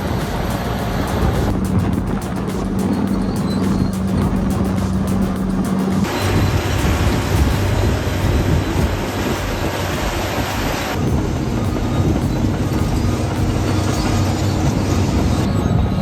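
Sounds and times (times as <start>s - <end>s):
bulldozer engine and tracks rumbling: 0.0s - 16.0s.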